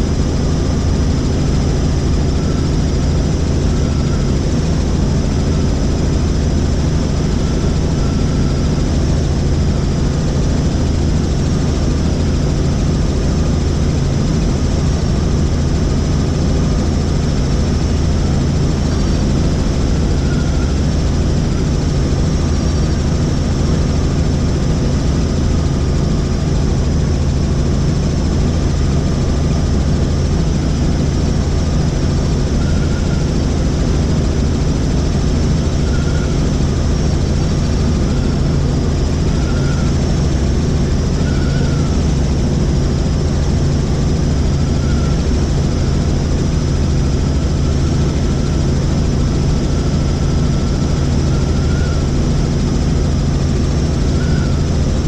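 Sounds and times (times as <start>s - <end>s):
helicopter engine and rotor drone: 0.0s - 55.0s.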